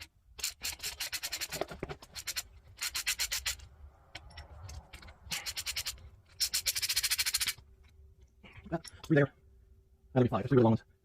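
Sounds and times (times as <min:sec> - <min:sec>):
ratchet wrench clicking: 0:00.4 - 0:07.6.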